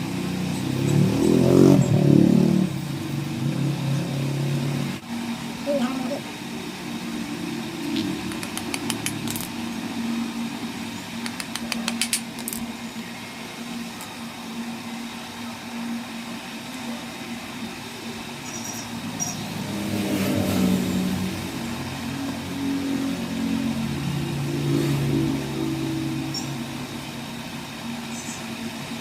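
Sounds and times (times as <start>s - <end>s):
rapid metallic clicking: 7.9s - 9.6s, 11.2s - 12.7s.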